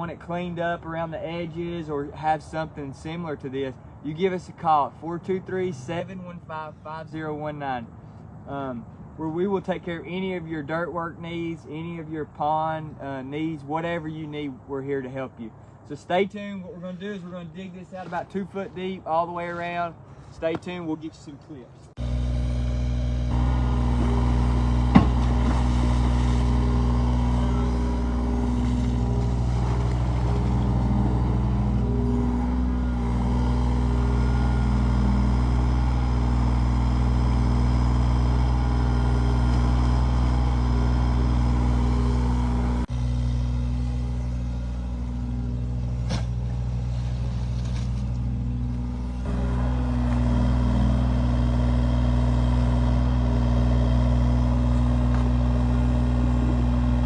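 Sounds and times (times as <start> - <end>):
digging machine engine running: 22.0 - 57.0.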